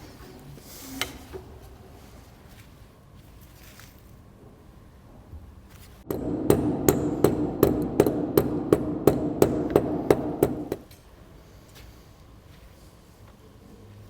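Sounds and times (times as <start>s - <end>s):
hammer striking metal: 6.1s - 11.0s.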